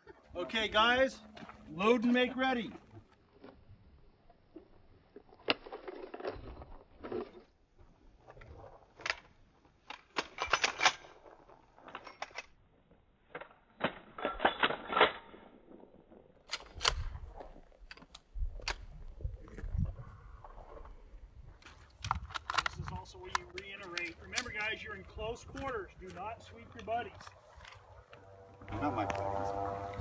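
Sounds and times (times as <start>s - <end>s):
pistols clicking and clattering: 21.6s - 27.9s.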